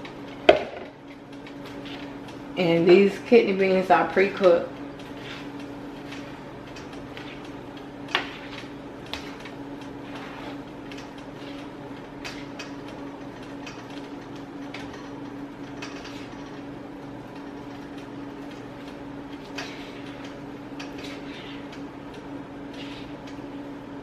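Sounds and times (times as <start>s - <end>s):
steady hum: 0.0s - 24.0s.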